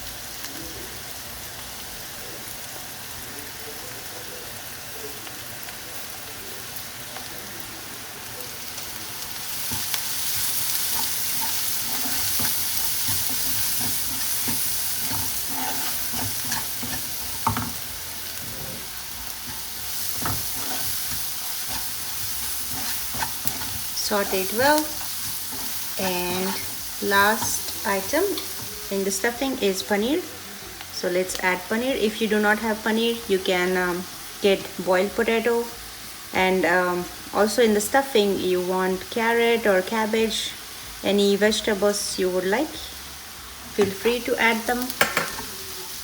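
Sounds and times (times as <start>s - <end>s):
vegetables sizzling in oil: 0.0s - 46.0s
utensil scraping and knocking pan: 9.7s - 27.8s.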